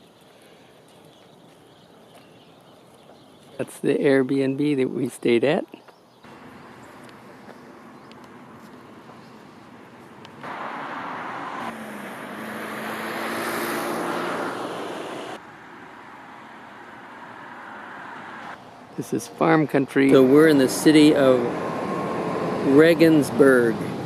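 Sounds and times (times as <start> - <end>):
car tyres rushing on road: 6.3 - 18.7, 20.0 - 24.0
car engine: 6.3 - 19.1, 19.9 - 24.0.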